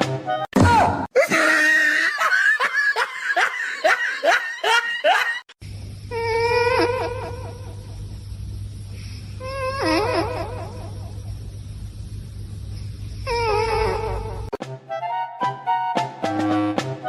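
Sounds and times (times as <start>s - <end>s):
person laughing hard: 1.2s - 5.5s
steady low hum: 5.6s - 14.6s.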